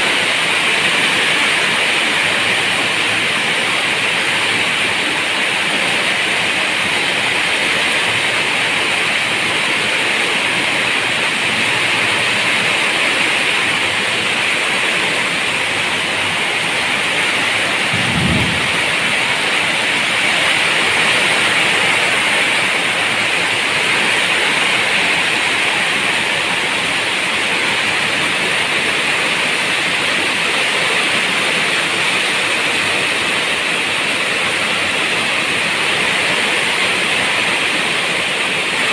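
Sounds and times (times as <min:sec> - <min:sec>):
steady rain falling: 0:00.0 - 0:38.9
low boom of thunder: 0:17.9 - 0:19.6.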